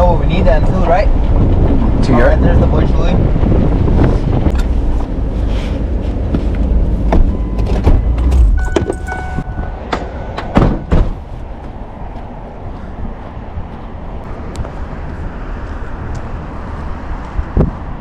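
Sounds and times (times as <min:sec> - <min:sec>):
truck rumbling: 0:00.0 - 0:18.0
clunks and knocks: 0:06.3 - 0:11.3.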